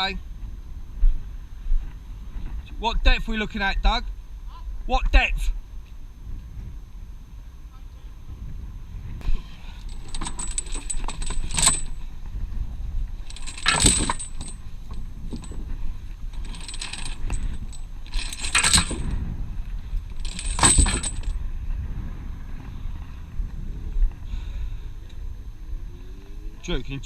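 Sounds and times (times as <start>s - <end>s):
low steady rumble: 0.0s - 27.0s
metallic jingling and clinking: 9.8s - 12.0s, 13.2s - 15.6s, 16.3s - 19.2s, 20.0s - 21.4s.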